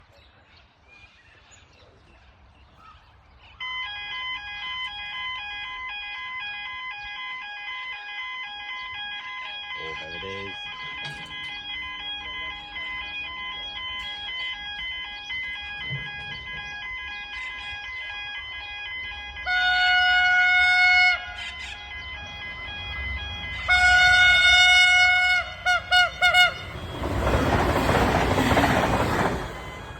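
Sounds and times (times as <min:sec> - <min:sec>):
train horn blasts: 0:03.6 - 0:28.4
train rushing past: 0:21.4 - 0:29.9.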